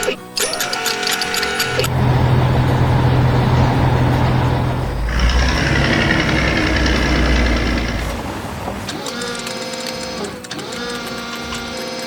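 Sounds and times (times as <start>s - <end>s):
heavy vehicle engine running: 1.3s - 8.9s.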